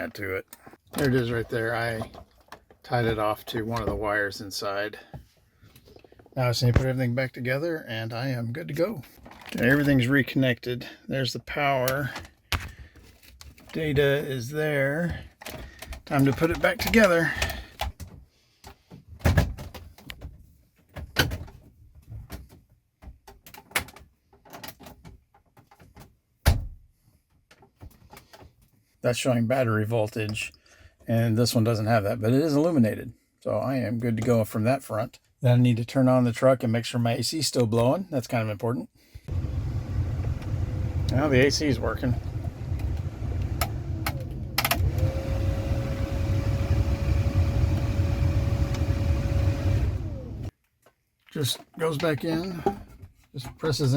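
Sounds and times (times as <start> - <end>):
truck engine idling: 39.3 - 46.5
air conditioning blowing: 39.3 - 50.5
steady whine: 39.3 - 50.5.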